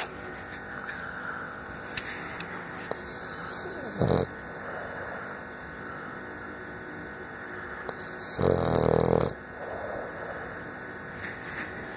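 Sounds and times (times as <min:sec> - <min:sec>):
dog snoring: 0:02.9 - 0:06.1, 0:07.9 - 0:11.9.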